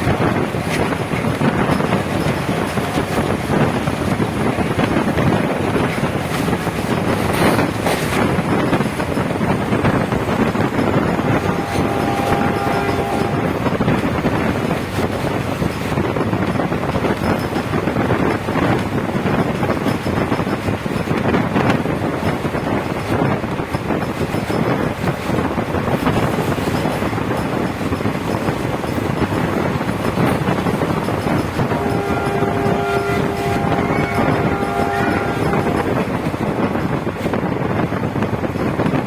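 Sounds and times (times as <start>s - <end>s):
train wheels rumbling on rail: 0.0s - 39.0s
wind buffeting microphone: 0.0s - 39.0s.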